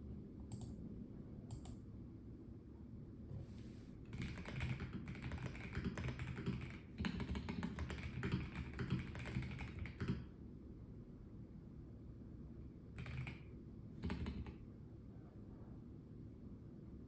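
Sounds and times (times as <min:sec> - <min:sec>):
mechanical keyboard typing: 0:04.1 - 0:10.3, 0:13.0 - 0:14.6.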